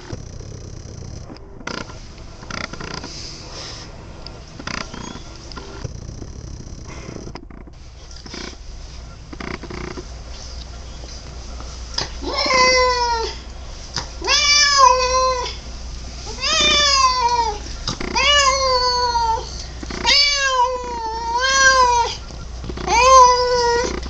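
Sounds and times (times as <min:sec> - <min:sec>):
cat meowing: 0:12.2 - 0:13.4, 0:14.2 - 0:15.6, 0:16.3 - 0:22.2, 0:22.8 - 0:24.0.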